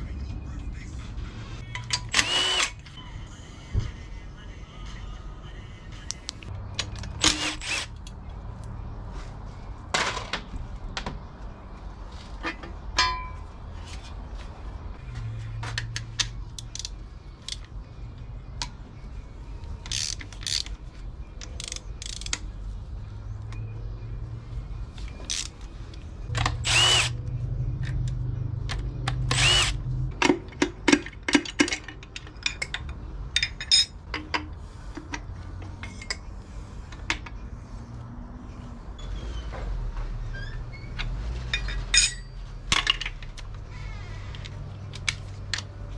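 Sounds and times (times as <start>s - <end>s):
background music: 0.0s - 10.0s
power tool running: 2.2s - 2.8s, 26.6s - 27.2s, 29.3s - 29.8s
metal tools clinking and knocking: 12.4s - 13.6s, 30.2s - 36.3s, 41.4s - 43.4s.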